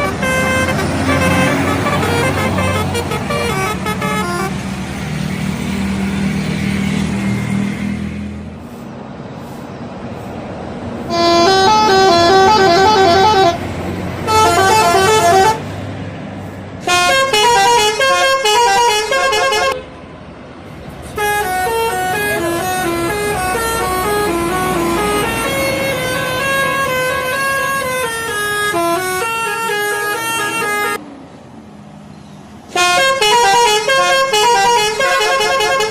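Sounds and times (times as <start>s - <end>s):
bus horn playing melodic notes: 0.0s - 4.8s, 11.1s - 15.8s, 16.8s - 20.0s, 21.0s - 31.0s, 32.7s - 35.9s
bus engine running: 0.0s - 35.9s.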